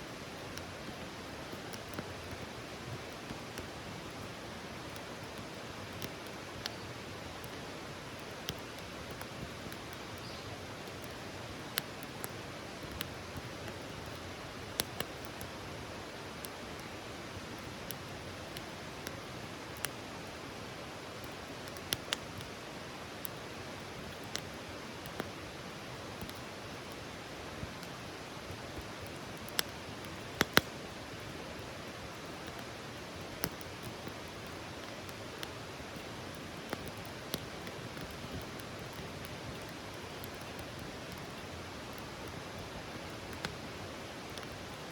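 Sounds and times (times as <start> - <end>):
campfire crackling: 0.0 - 44.9.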